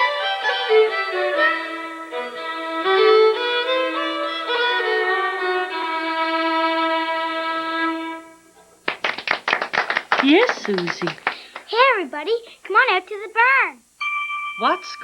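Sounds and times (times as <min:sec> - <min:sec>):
fiddle melody: 0:00.0 - 0:08.6.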